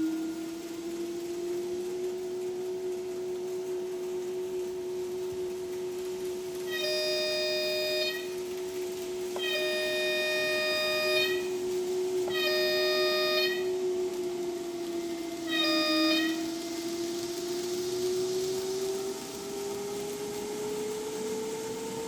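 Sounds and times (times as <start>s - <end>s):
steady running hum: 0.0s - 22.0s
electric locomotive horn blasts: 6.6s - 14.1s, 15.0s - 17.0s.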